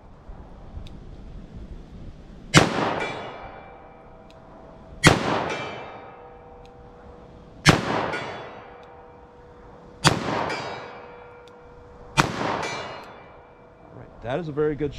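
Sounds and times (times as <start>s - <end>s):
revolver shots with echo: 2.5s - 7.0s, 7.6s - 9.4s, 10.0s - 13.8s.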